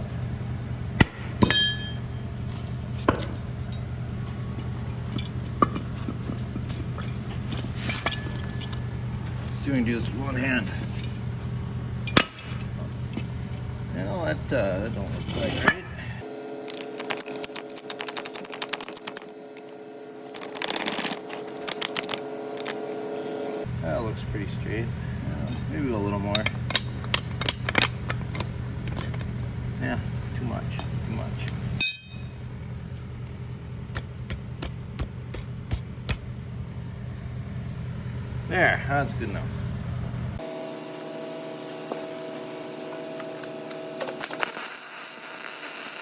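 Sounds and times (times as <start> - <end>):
low hum: 0.0 - 38.5
metal tool clinks: 1.4 - 2.1, 30.8 - 32.3.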